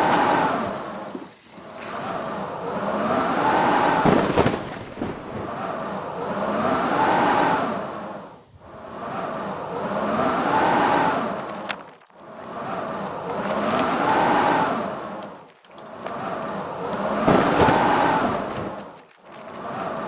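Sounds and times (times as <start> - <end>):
blizzard wind howling: 0.0 - 20.0.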